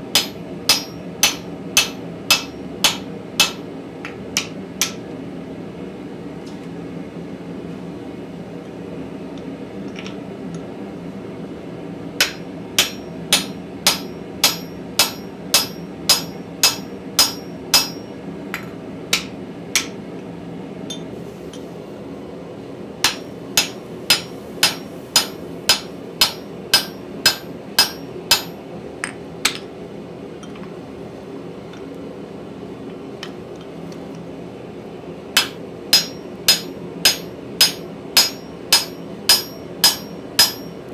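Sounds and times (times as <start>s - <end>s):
hammer striking steel on anvil: 0.1s - 5.1s, 12.2s - 20.0s, 23.0s - 29.7s, 35.4s - 40.8s.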